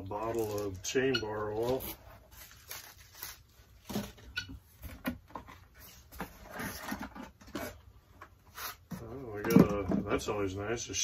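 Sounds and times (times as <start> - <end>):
packaging rustling: 0.2 - 4.3.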